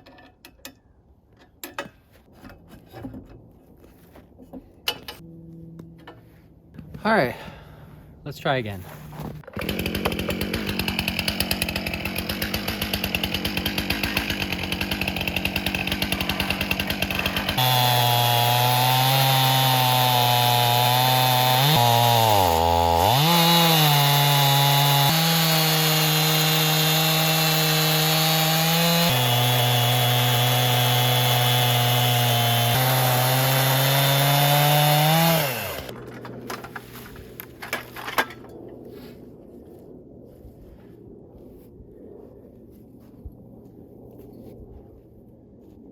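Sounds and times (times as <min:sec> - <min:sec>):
chainsaw cutting log: 0:09.4 - 0:37.0.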